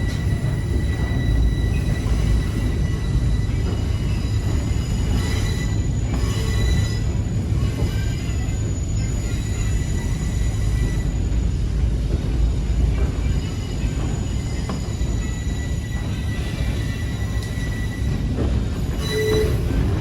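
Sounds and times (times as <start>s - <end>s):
high-pitched wheel squeal: 0.0s - 11.4s, 13.4s - 20.0s
railcar rumbling on rails: 0.0s - 20.0s.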